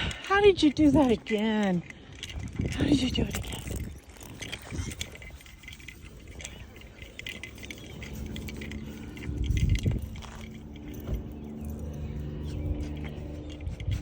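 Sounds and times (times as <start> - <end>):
light clinks: 0.0 - 14.0
distant engine droning: 3.0 - 14.0.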